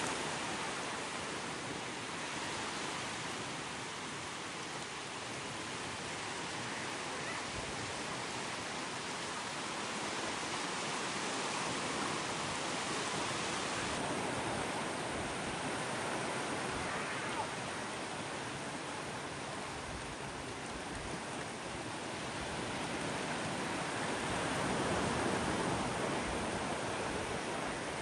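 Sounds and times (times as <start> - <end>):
sea waves breaking on beach: 0.0 - 28.0.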